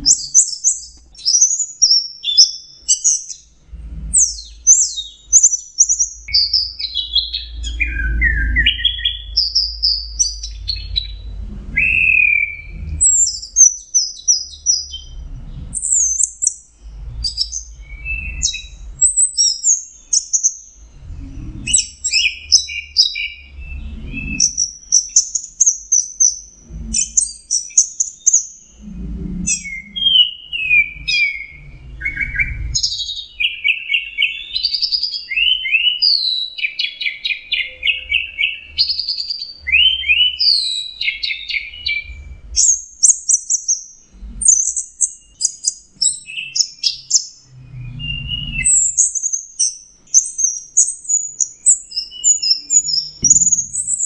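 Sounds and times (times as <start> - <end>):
dull low thumps: 3.5 - 4.6, 9.2 - 13.6, 20.7 - 22.0, 47.5 - 48.7, 53.2 - 54.0.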